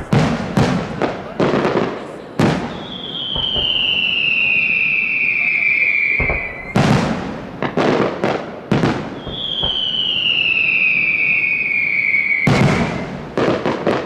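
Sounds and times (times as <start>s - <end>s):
firework bangs: 0.0s - 14.0s
firework whistle gliding down: 2.5s - 7.0s, 9.2s - 13.4s.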